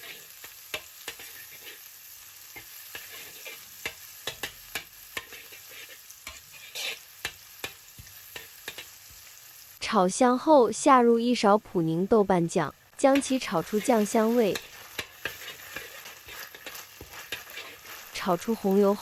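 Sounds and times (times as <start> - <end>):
spatula scraping and tapping pan: 0.0 - 1.9, 2.5 - 9.3, 13.1 - 18.7
food sizzling in oil: 0.0 - 19.0.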